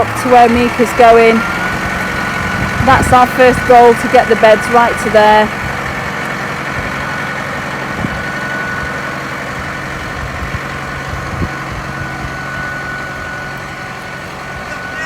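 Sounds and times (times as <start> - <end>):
tractor engine running: 0.0 - 15.0
thin steady whine: 6.8 - 15.0.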